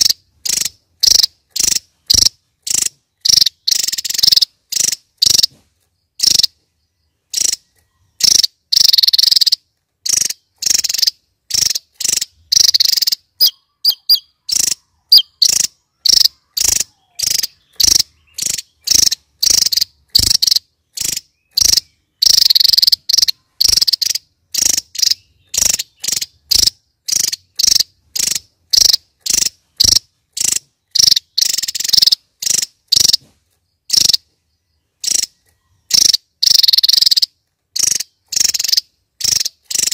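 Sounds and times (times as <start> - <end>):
bird singing high notes: 12.4 - 20.3.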